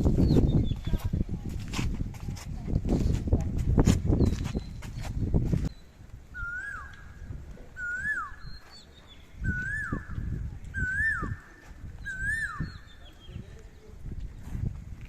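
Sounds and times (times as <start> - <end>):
animal whistled call: 6.4 - 7.1, 7.8 - 13.1.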